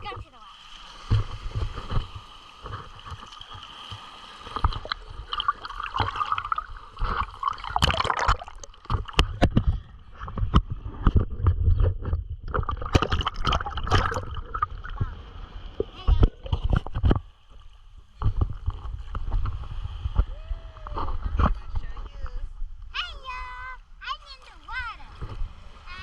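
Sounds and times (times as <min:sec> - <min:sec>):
water sloshing and gurgling: 0:00.0 - 0:26.0
knocks and bumps on camera: 0:08.9 - 0:15.1, 0:16.0 - 0:17.2, 0:18.2 - 0:20.3.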